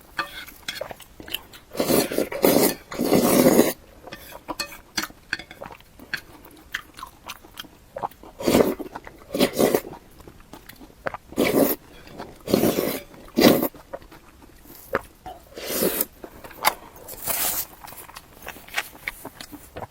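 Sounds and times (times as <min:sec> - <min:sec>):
wet biting and chewing: 0:05.0 - 0:15.2, 0:15.8 - 0:19.9.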